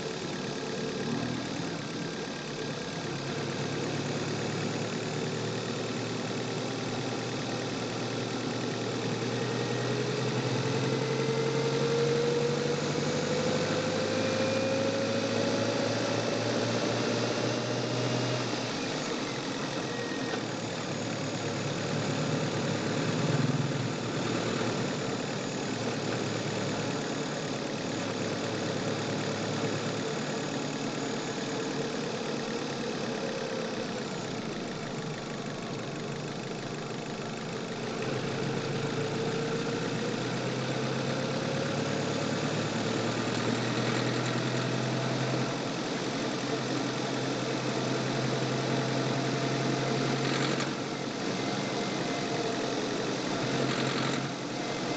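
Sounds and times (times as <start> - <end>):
car engine running: 0.0 - 54.9.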